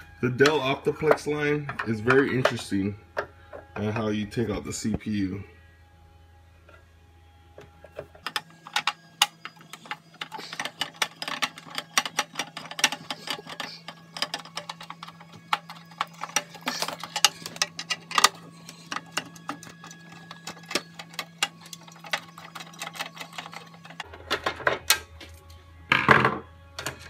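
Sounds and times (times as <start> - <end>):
faint steady hum: 0.0 - 27.0
computer parts clicking and rattling: 7.7 - 25.0.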